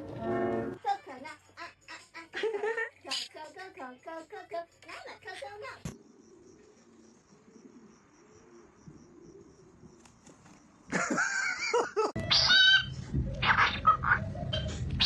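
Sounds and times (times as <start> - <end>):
parrot squawking: 12.2 - 15.0.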